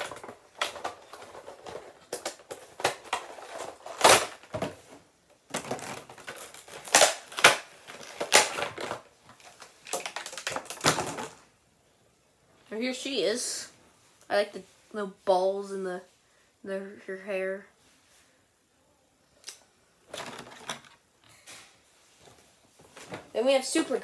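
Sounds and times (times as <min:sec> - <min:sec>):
packaging clicks and crinkles: 0:00.0 - 0:04.7, 0:05.5 - 0:11.5
sharp plastic snaps: 0:05.5 - 0:09.0.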